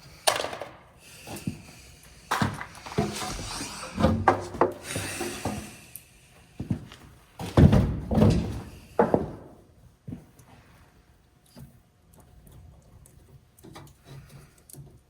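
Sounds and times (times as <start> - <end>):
rubbing sounds: 2.5 - 5.2.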